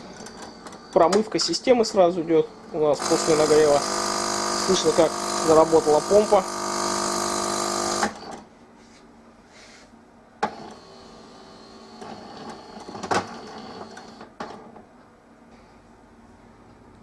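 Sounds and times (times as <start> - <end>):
thin high whine: 0.0 - 8.2
faint mechanical whirring: 0.0 - 9.0, 10.0 - 17.0
coffee machine clicking: 3.0 - 8.2.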